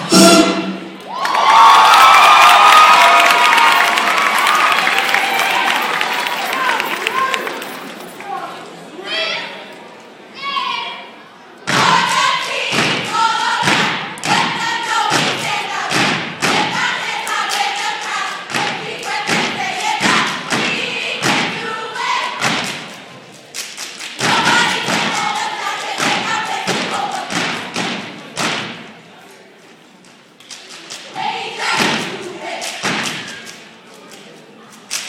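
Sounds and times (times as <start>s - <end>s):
stomping and clapping: 1.0s - 8.3s, 31.8s - 33.7s.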